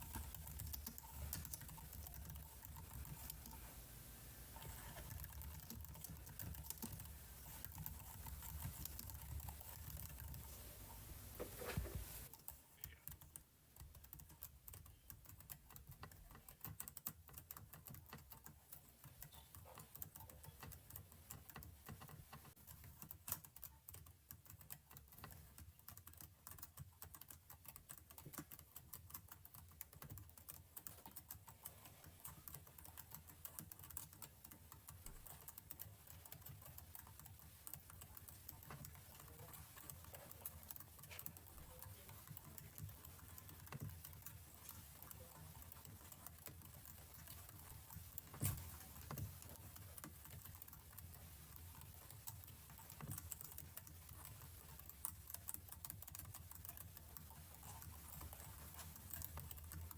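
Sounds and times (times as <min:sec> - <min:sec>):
computer keyboard typing: 0:00.0 - 0:59.9.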